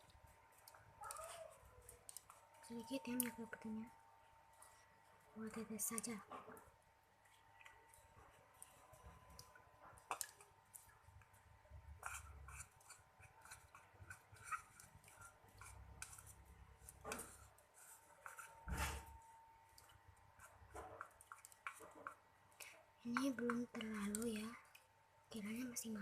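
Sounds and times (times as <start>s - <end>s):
utensil scraping in container: 12.0s - 19.0s.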